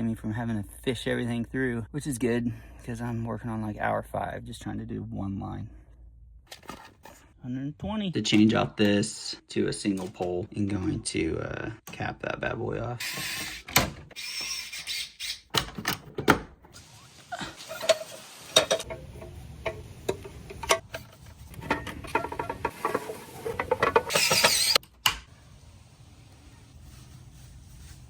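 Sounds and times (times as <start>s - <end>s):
hand tools clicking and scraping: 17.4s - 24.8s.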